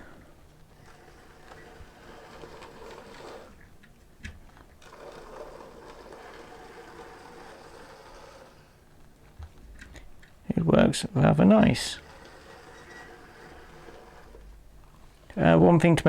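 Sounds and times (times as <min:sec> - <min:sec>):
model train motor whir: 0:00.0 - 0:03.7, 0:04.8 - 0:09.0, 0:11.2 - 0:15.4.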